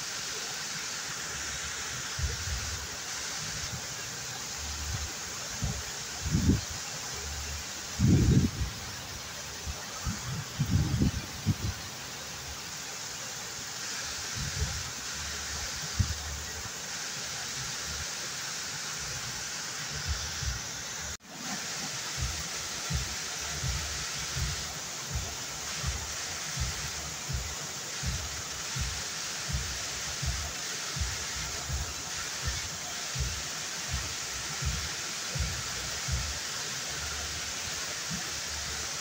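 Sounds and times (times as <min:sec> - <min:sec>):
waterfall rushing: 0:00.0 - 0:39.0
soft low thumps: 0:22.2 - 0:31.9.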